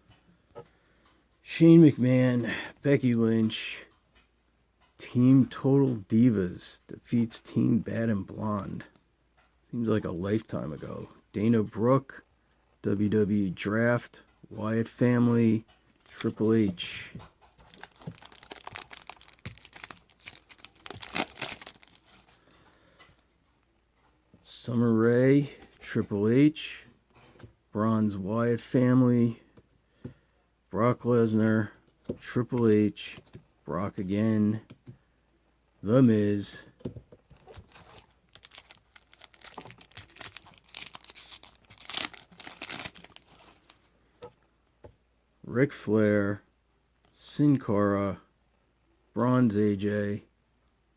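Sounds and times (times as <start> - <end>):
trading cards being flipped: 17.6 - 22.5, 37.3 - 43.9.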